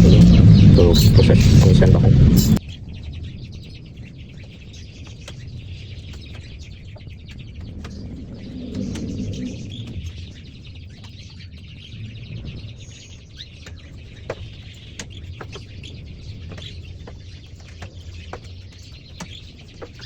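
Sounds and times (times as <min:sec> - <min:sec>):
steady low hum: 0:00.0 - 0:10.9
canaries chirping: 0:00.0 - 0:20.0.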